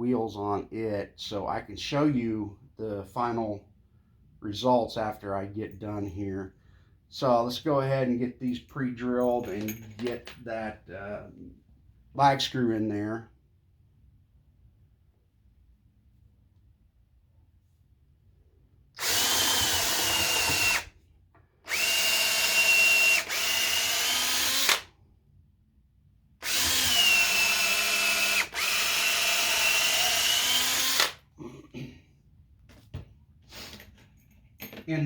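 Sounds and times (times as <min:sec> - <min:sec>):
power drill boring into wood: 0:19.0 - 0:20.9, 0:21.7 - 0:24.9, 0:26.4 - 0:31.2.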